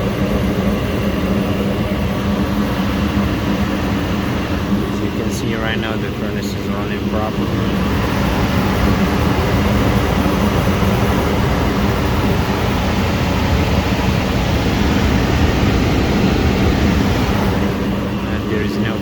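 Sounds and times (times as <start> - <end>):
furnace low hum: 0.0 - 19.0
furnace air rushing: 7.6 - 18.7.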